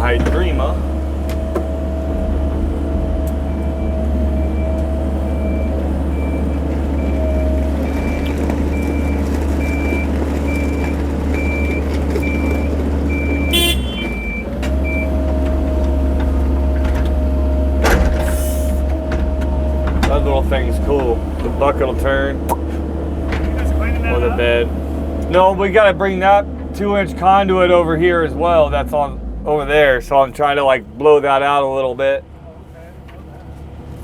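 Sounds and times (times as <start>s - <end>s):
hydraulic whine: 0.0s - 25.6s
excavator diesel engine running: 0.0s - 34.0s
back-up alarm beeping: 3.4s - 15.2s
sharp clunk: 17.8s - 18.7s.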